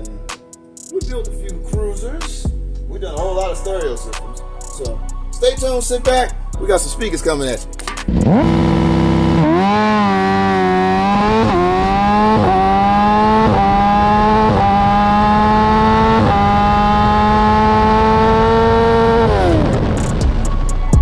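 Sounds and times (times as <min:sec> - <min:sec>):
engine accelerating through gears: 0:08.1 - 0:20.4.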